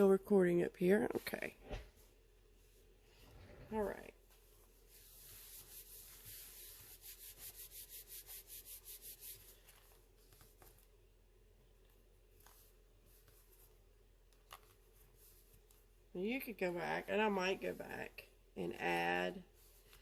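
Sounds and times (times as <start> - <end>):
rubbing on paper: 4.3 - 10.9.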